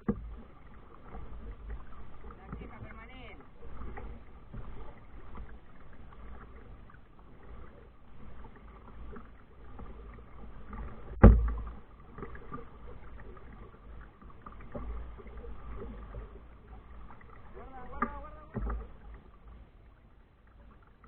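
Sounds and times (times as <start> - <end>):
hard thump: 11.2 - 11.7.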